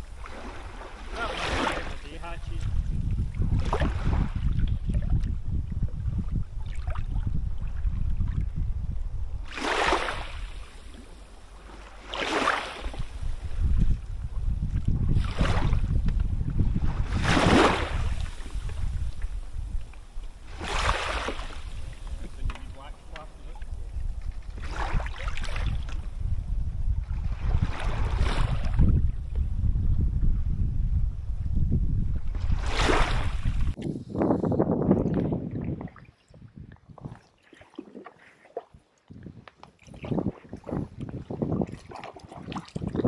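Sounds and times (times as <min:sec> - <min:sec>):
paddle strokes splashing water: 0:00.0 - 0:29.5, 0:32.2 - 0:33.8, 0:36.9 - 0:39.0, 0:39.6 - 0:43.0
wind rumble on microphone: 0:00.0 - 0:37.4, 0:38.1 - 0:43.0.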